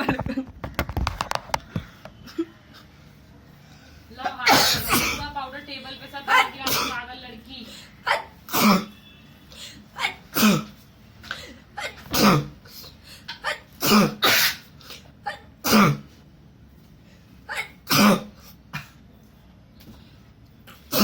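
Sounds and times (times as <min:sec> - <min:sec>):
people sneezing: 0:04.4 - 0:05.3, 0:09.6 - 0:16.1.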